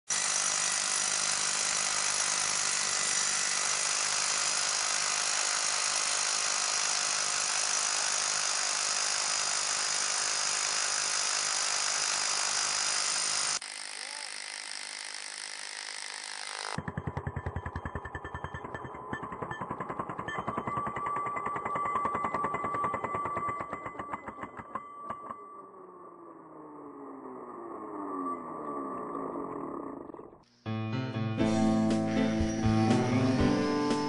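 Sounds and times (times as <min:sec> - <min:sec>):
drill grinding into concrete: 0:00.1 - 0:25.8.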